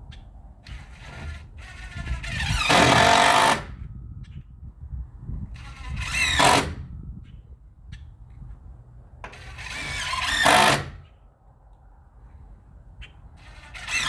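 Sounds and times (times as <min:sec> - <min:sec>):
power drill driving screws: 0:00.7 - 0:03.7, 0:05.6 - 0:06.8, 0:09.3 - 0:11.0, 0:13.4 - 0:14.0.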